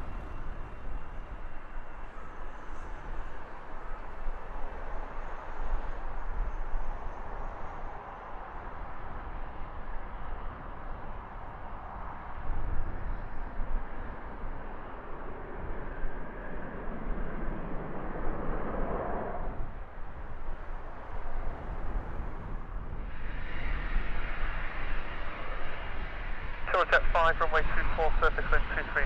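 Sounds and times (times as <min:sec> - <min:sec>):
high engine whine: 0:00.0 - 0:29.0
jet engines running: 0:00.0 - 0:29.0
wind buffeting microphone: 0:08.6 - 0:26.9.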